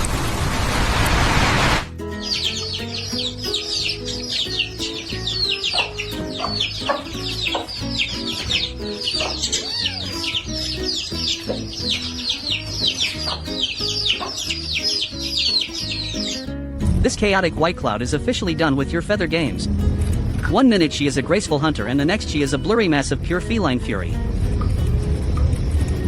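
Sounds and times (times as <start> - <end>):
background music: 1.8 - 26.0
high bird-like chirps: 2.1 - 16.5.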